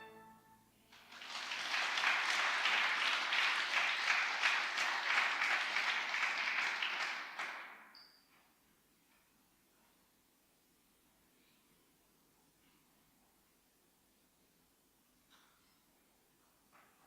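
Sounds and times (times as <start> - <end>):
audience applauding: 0.9 - 7.9.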